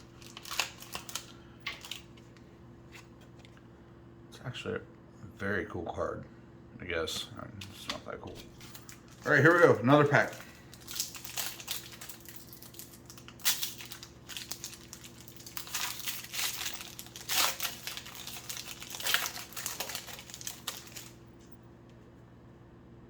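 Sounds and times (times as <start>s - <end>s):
wrapper crinkling and tearing: 0.0s - 2.2s, 8.5s - 21.5s.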